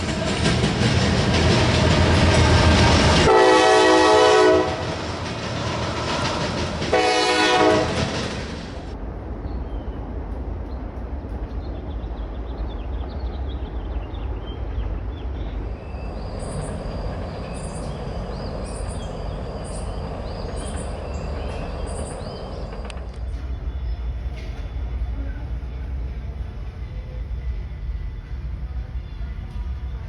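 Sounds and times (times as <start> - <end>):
train rumbling past: 0.0 - 30.0
train horn: 1.9 - 5.2, 6.9 - 8.3
faint bird chirps: 11.5 - 30.0.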